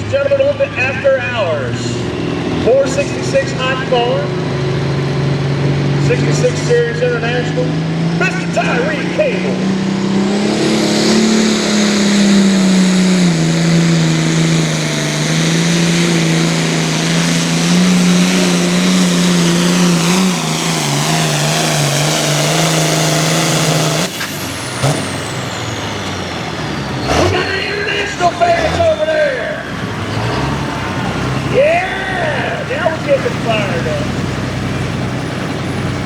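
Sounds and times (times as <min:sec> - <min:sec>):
tractor diesel engine running hard: 0:00.0 - 0:36.0
turbo whine winding down: 0:08.7 - 0:34.1.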